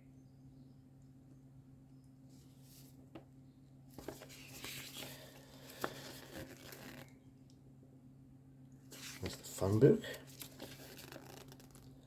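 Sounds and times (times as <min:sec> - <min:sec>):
packaging rustling: 0:04.0 - 0:07.1, 0:09.0 - 0:12.0.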